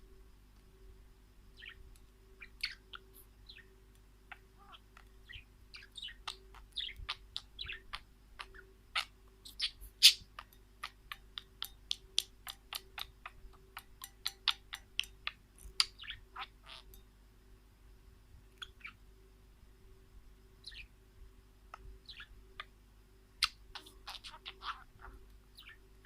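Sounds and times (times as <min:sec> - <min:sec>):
small birds chirping: 0:01.5 - 0:17.2, 0:18.4 - 0:26.0.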